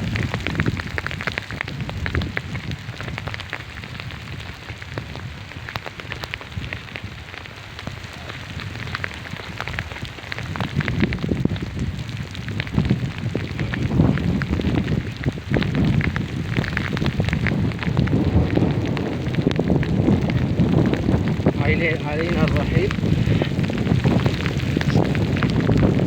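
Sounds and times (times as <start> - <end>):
heavy rain: 0.0 - 26.0
low rumble: 10.9 - 26.0.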